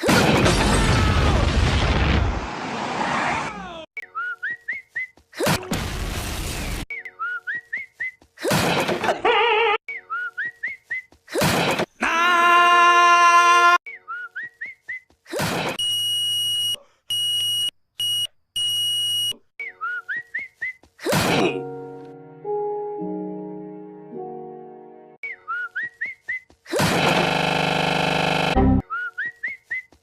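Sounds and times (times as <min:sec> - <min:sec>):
whistled tune: 0:04.0 - 0:05.2, 0:06.9 - 0:08.2, 0:19.6 - 0:20.8, 0:25.2 - 0:26.5, 0:28.8 - 0:29.9.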